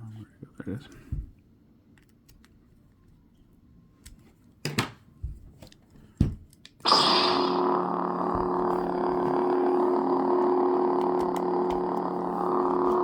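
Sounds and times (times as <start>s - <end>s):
lightsaber humming: 6.9s - 13.0s.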